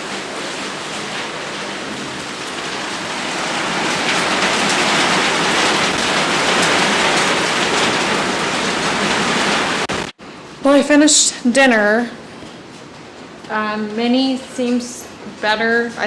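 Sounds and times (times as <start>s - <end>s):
heavy rain falling: 0.0s - 16.0s.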